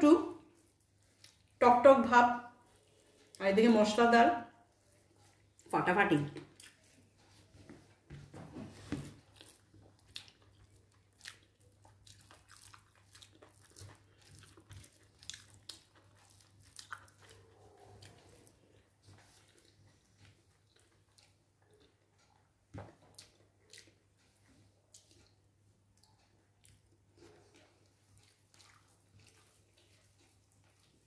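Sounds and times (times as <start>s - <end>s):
person chewing: 0.4s - 1.6s, 6.3s - 7.7s, 8.9s - 31.0s.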